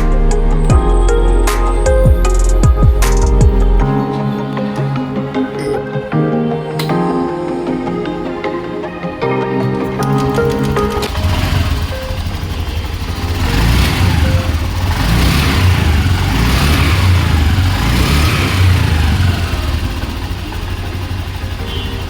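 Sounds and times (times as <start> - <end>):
scooter engine revving: 10.1 - 22.0.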